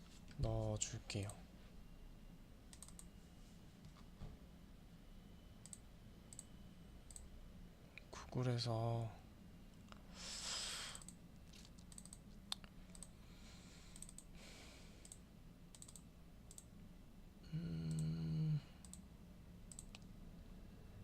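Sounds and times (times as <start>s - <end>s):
computer mouse clicks: 2.7s - 3.1s, 5.6s - 6.5s, 11.0s - 13.1s, 13.9s - 14.3s, 15.0s - 16.7s, 17.9s - 18.1s, 18.8s - 19.0s, 19.7s - 20.1s
person humming: 17.4s - 18.7s.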